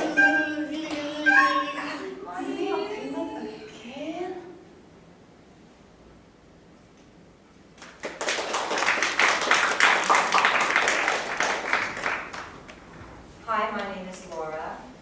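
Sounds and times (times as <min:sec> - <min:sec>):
audience applause: 0:07.8 - 0:12.8.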